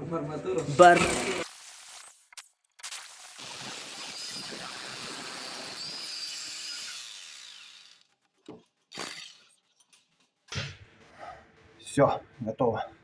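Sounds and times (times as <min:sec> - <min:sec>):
power tool whining: 0:02.9 - 0:08.3, 0:08.9 - 0:09.6.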